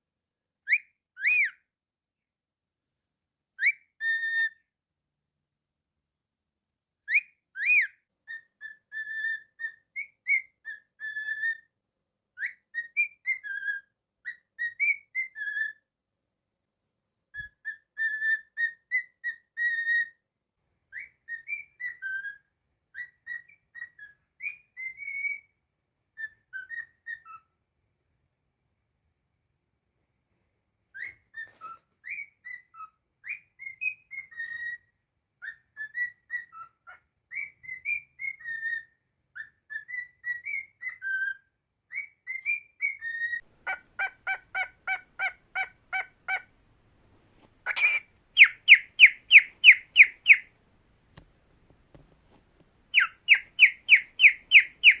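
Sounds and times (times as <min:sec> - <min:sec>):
cockatiel whistling: 0:00.7 - 0:01.6, 0:03.6 - 0:04.6, 0:07.1 - 0:11.7, 0:12.4 - 0:15.8, 0:17.4 - 0:20.2, 0:20.9 - 0:25.5, 0:26.2 - 0:27.5, 0:31.0 - 0:46.5, 0:47.6 - 0:50.5, 0:52.9 - 0:55.0.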